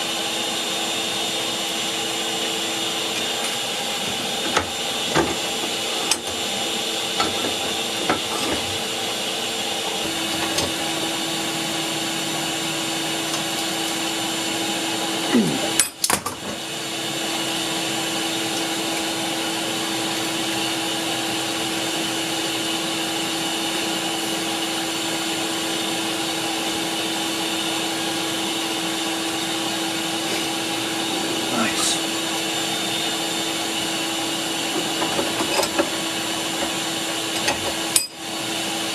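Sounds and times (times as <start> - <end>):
forge air blower drone: 0.0 - 15.9, 25.8 - 38.9.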